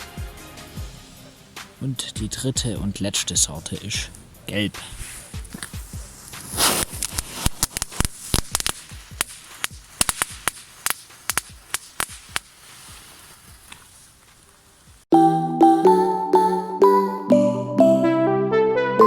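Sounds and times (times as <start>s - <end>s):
music: 0.0s - 3.0s, 15.1s - 19.0s
firework crackling and popping: 4.8s - 15.1s.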